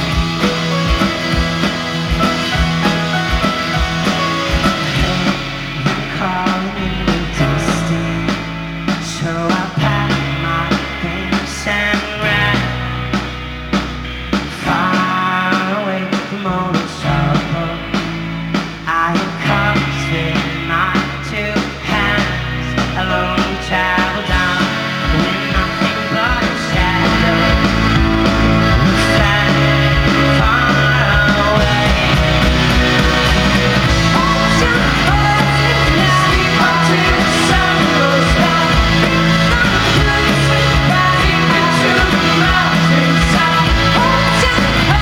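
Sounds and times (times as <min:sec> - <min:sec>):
bass notes: 0:00.0 - 0:45.0
drums: 0:00.0 - 0:45.0
guitars: 0:00.0 - 0:45.0
voices singing: 0:18.9 - 0:45.0.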